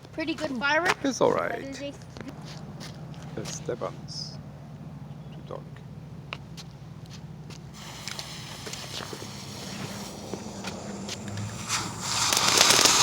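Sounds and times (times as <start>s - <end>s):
firework hissing and crackling: 7.7s - 13.0s
firework rushing hiss: 7.7s - 13.0s.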